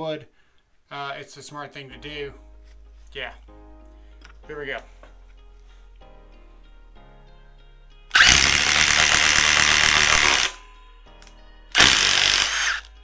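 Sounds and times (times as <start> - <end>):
impact driver boring into wood: 8.1 - 10.6, 11.7 - 12.9.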